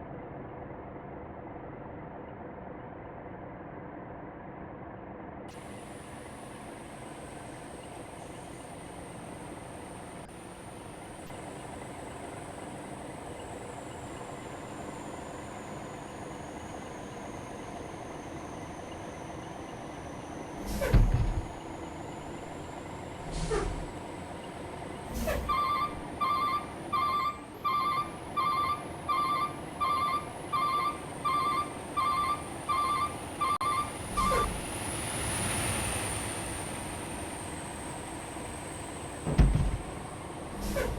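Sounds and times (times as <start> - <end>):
vehicle engine humming: 0.0 - 40.9
reversing alarm beeping: 25.2 - 34.7.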